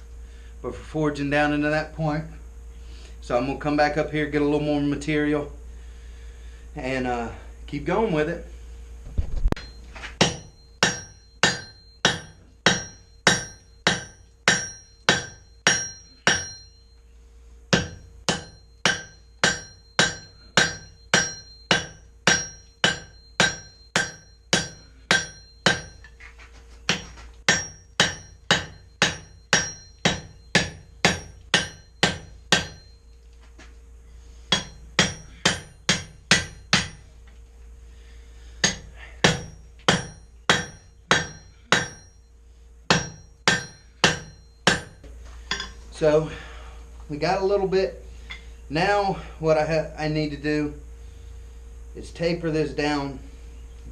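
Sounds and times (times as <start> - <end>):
hammer striking steel on anvil: 9.6 - 16.8, 17.7 - 26.2, 26.9 - 33.0, 34.5 - 37.1, 38.6 - 42.2, 42.9 - 45.8.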